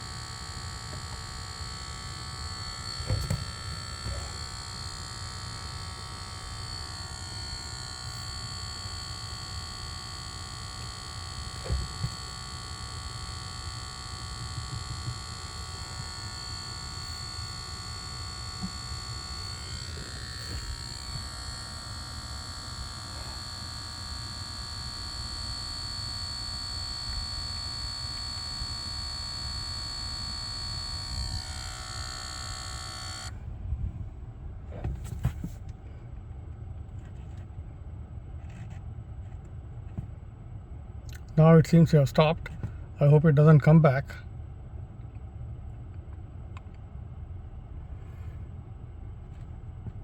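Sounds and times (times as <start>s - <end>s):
high-pitched electronic buzz: 0.0s - 33.4s.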